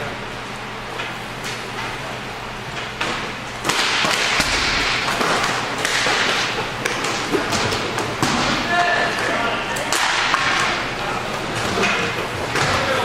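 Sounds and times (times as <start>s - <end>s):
hockey sticks striking puck: 2.8s - 13.0s.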